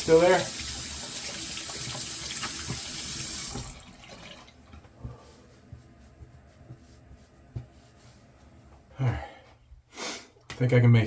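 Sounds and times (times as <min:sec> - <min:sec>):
tap running into sink: 0:00.5 - 0:03.9.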